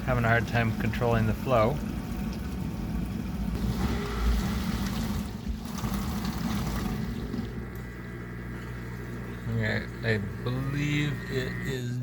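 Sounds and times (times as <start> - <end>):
churning water: 0.0 - 7.7
dishwasher pump humming: 0.0 - 12.0.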